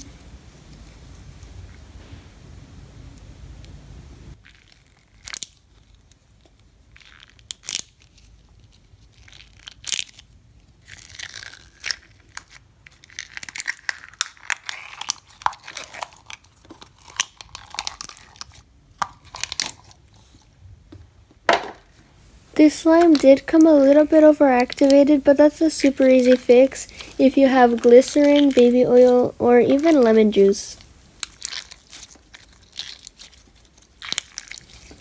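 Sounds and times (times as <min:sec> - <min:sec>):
slime popping and crackling: 0:06.9 - 0:08.3, 0:09.0 - 0:20.1, 0:21.5 - 0:35.0.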